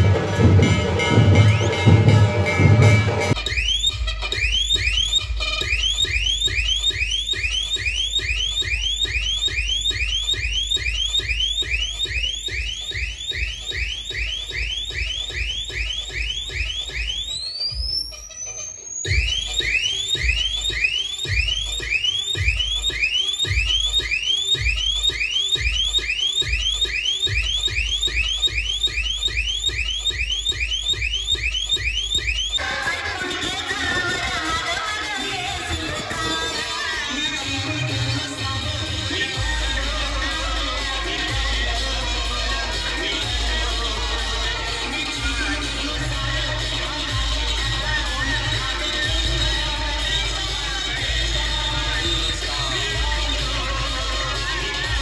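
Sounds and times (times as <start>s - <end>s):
pulsing bass: 0.0s - 18.1s, 37.8s - 55.0s
electronic siren whoops: 2.8s - 38.4s
deep bass throb: 39.1s - 55.0s.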